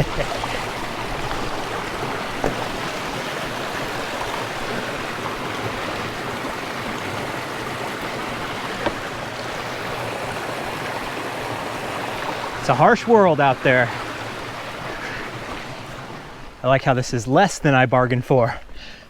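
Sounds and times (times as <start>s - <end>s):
stream water rushing: 0.0s - 18.6s
brief knocks: 2.4s - 2.9s, 8.8s - 9.2s.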